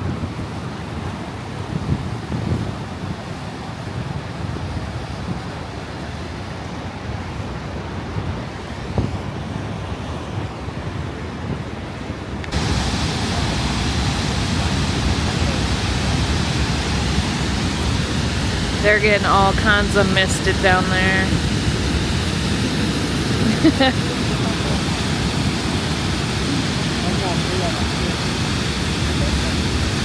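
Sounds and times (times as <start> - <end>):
wind buffeting microphone: 0.0 - 9.6
waterfall roar: 12.5 - 30.0.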